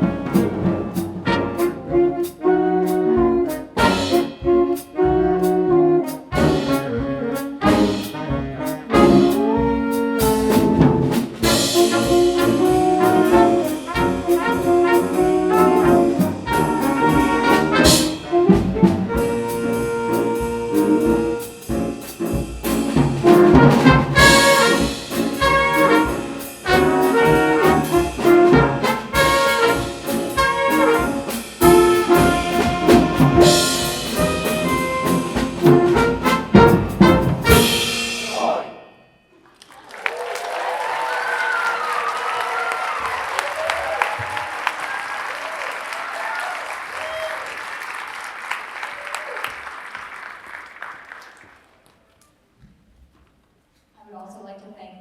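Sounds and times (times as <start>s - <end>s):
brass band playing: 0.0s - 38.9s.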